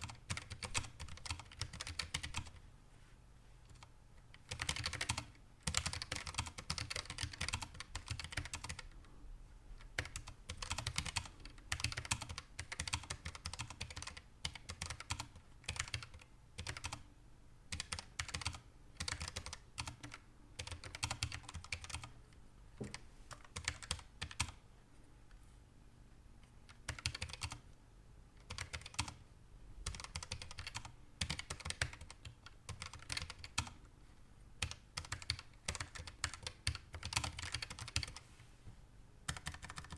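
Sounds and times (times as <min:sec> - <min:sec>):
mechanical keyboard typing: 0:00.0 - 0:02.6, 0:03.7 - 0:08.9, 0:09.9 - 0:17.0, 0:17.7 - 0:22.1, 0:22.8 - 0:24.6, 0:26.7 - 0:27.6, 0:28.4 - 0:29.2, 0:29.8 - 0:33.8, 0:34.6 - 0:38.2, 0:39.3 - 0:39.9.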